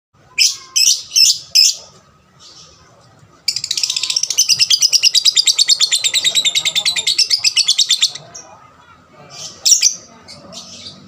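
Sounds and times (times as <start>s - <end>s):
lovebird chirping and chattering: 0.4s - 1.8s, 3.4s - 8.5s, 9.3s - 11.0s.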